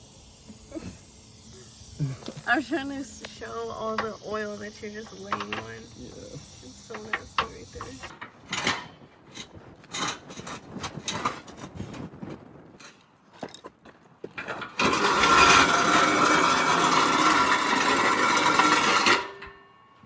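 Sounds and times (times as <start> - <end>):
pneumatic impact wrench: 0.0 - 8.9, 14.6 - 19.6
metal tools clinking: 2.2 - 8.8.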